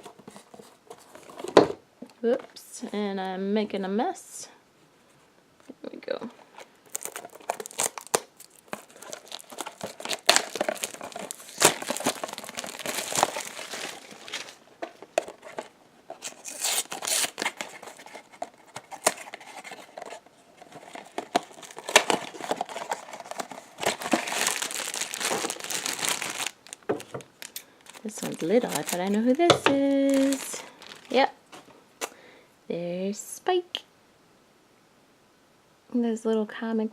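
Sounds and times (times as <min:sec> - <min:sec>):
plastic wrap crinkling and tearing: 0:06.6 - 0:31.7.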